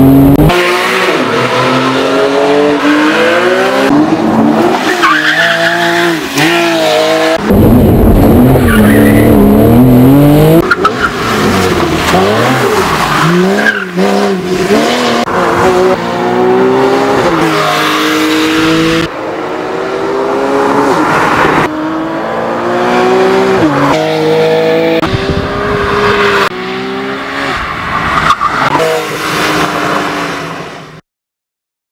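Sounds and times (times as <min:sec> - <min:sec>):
road and tyre noise: 0:00.0 - 0:31.0
car engine revving: 0:05.6 - 0:27.6.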